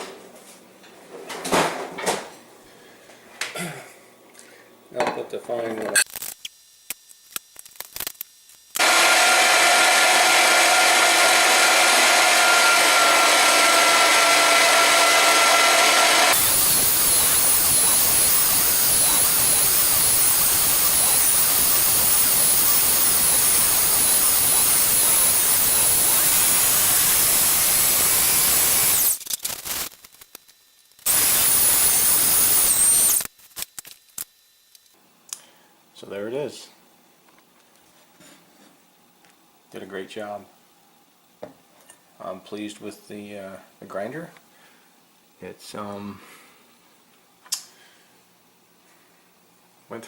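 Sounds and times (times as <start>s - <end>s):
electric meat grinder running: 8.8s - 29.2s, 31.0s - 33.3s.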